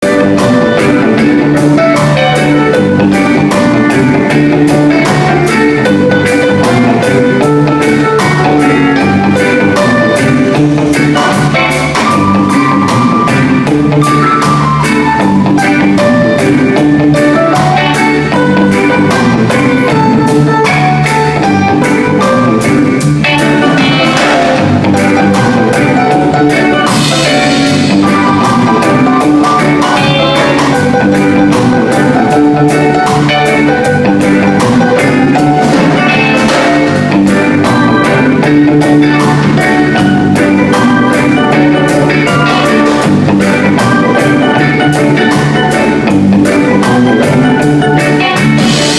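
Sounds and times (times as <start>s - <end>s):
live reggae band playing: 0.0s - 48.9s.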